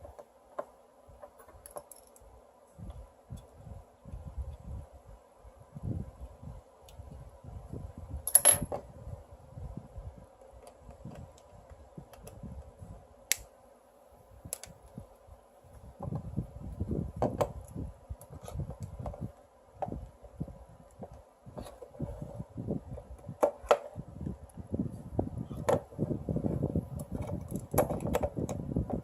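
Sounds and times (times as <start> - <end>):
small metal parts clinking: 1.4 - 2.3, 8.3 - 8.8.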